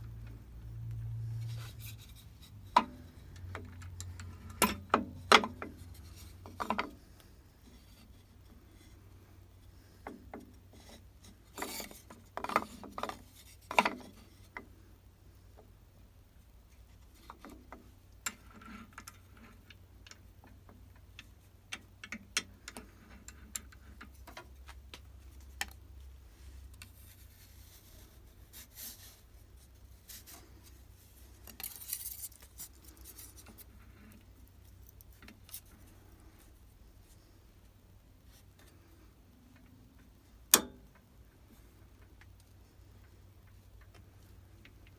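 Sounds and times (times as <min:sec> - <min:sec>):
low steady hum: 0:00.0 - 0:44.9
tools clicking and tapping: 0:40.5 - 0:41.1.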